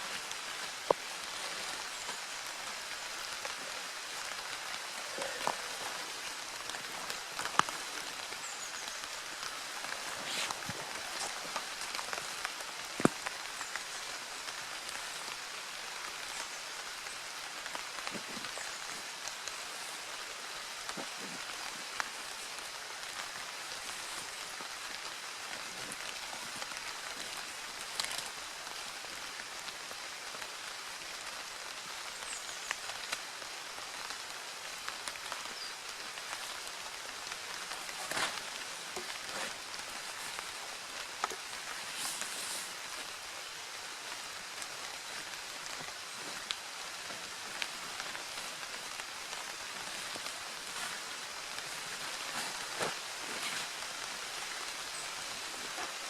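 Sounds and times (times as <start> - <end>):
sharp rain taps: 0.0 - 29.5
steady rain hissing: 0.0 - 56.0.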